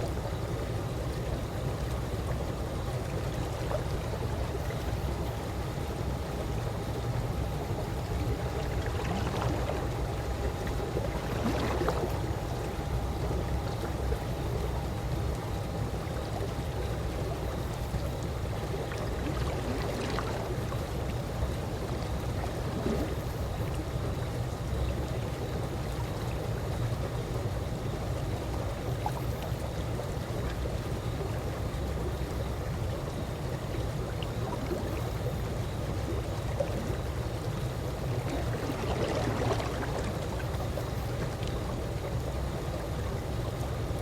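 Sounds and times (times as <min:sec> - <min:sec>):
pool water lapping: 0:00.0 - 0:44.0
faint splashes: 0:01.9 - 0:14.7, 0:17.8 - 0:23.9, 0:28.8 - 0:44.0.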